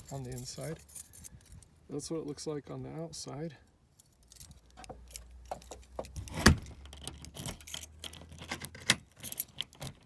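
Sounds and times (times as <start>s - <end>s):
keys jangling: 0.0s - 1.7s, 6.8s - 10.0s.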